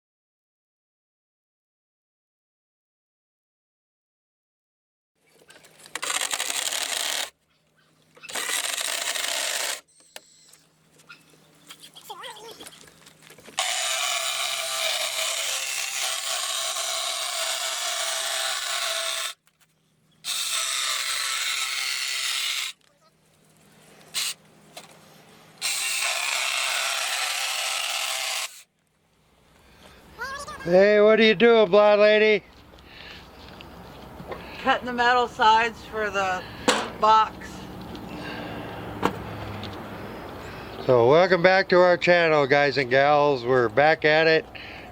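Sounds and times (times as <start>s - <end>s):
power tool cutting sheet metal: 6.0s - 7.3s, 8.2s - 9.9s, 13.6s - 19.4s, 20.2s - 22.8s, 24.2s - 24.4s, 25.6s - 28.7s.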